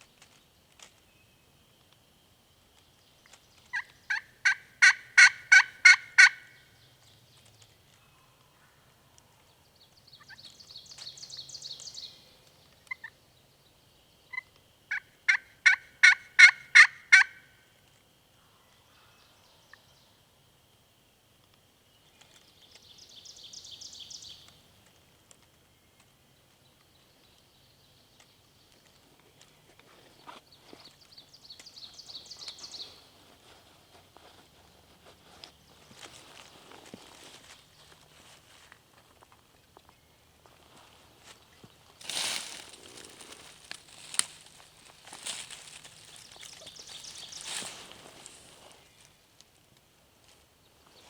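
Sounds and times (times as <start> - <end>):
turkey yelps: 3.7 - 6.5, 14.9 - 17.4.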